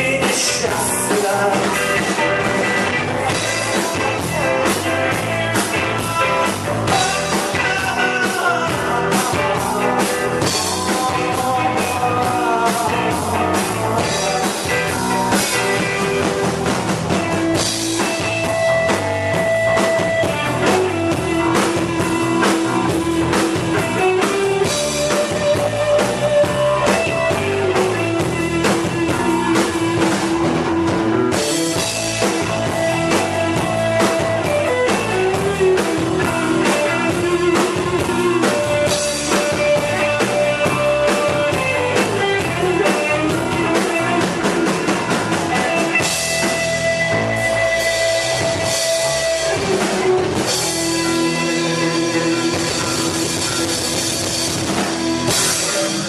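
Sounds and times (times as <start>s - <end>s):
rock band instrumental: 0.0s - 56.0s.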